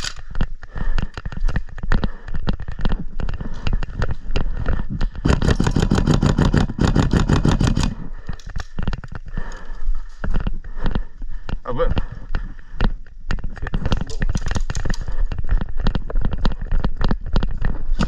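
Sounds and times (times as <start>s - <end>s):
airsoft gun firing: 5.2s - 8.0s.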